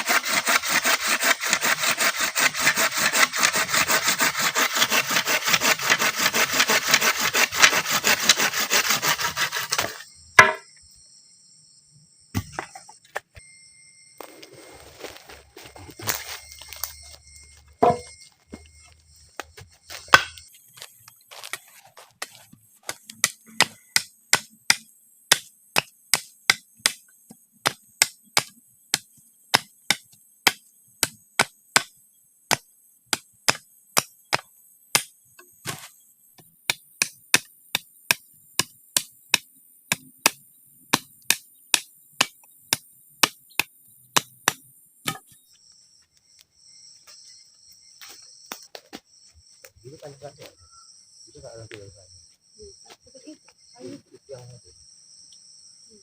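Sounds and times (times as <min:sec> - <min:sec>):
tool striking wood: 0:00.0 - 0:10.7, 0:12.3 - 0:12.9, 0:17.8 - 0:18.6, 0:20.0 - 0:20.4, 0:22.2 - 0:45.4
insects buzzing: 0:00.0 - 0:56.0.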